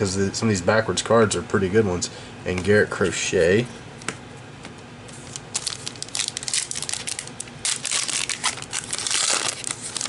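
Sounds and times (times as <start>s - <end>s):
foil wrapper tearing and crinkling: 5.2s - 10.0s.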